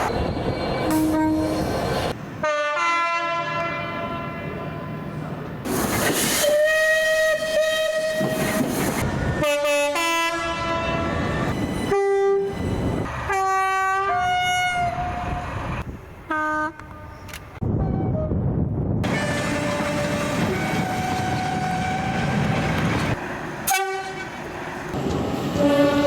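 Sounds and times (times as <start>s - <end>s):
trains rushing and clattering by: 0.0s - 2.6s, 3.4s - 17.6s, 19.0s - 26.0s
two-tone train horn blasts: 0.9s - 1.6s, 2.4s - 4.4s, 6.4s - 8.5s, 9.4s - 11.3s, 11.9s - 12.6s, 13.2s - 15.4s, 16.3s - 17.1s, 17.7s - 18.3s, 23.7s - 24.3s, 25.6s - 26.0s.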